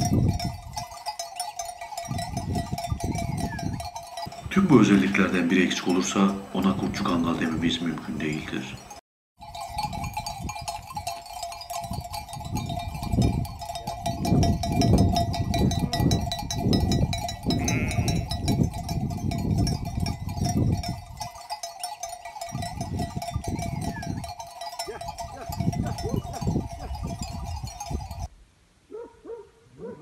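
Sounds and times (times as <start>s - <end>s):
sheep bells clinking: 0.0s - 28.3s
gusty low rumbling: 11.9s - 21.3s, 25.0s - 28.3s.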